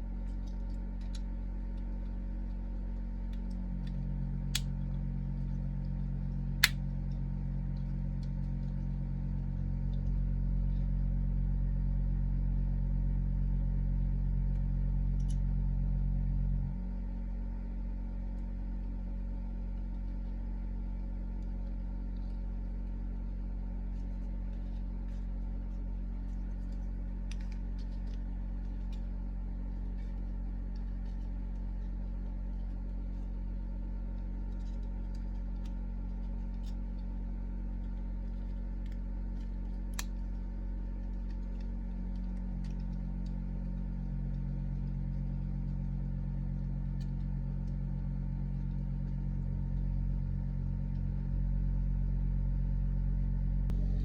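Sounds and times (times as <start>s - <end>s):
low engine-like drone: 19.7s - 54.0s.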